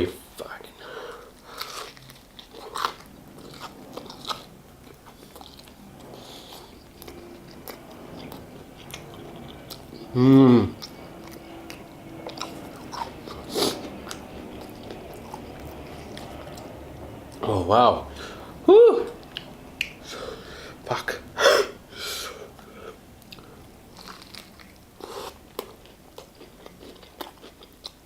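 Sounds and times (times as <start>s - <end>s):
chewing crispy food: 0.4s - 17.5s, 18.2s - 20.8s, 22.4s - 28.0s
person vocal sound falling in pitch: 18.7s - 19.1s.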